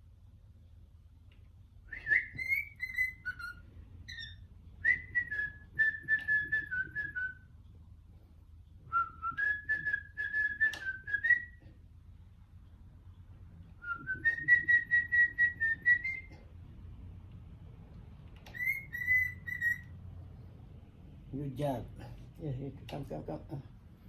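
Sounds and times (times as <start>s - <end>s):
cockatiel whistling a melody: 1.9s - 7.5s, 8.9s - 11.6s, 13.8s - 16.4s, 18.4s - 19.9s.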